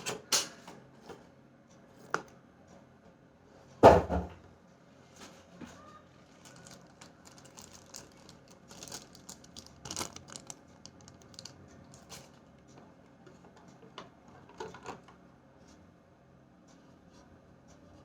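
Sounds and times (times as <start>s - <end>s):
small objects clicking and crinkling: 6.2s - 12.6s.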